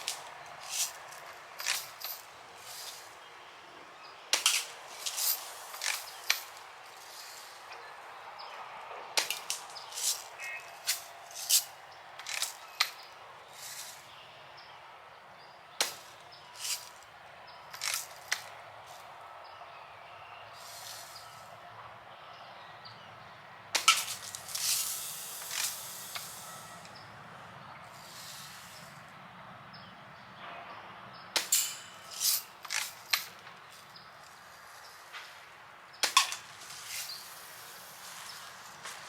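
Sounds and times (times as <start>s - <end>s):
bb gun snapping and clicking: 9.2s - 9.7s, 31.4s - 31.8s.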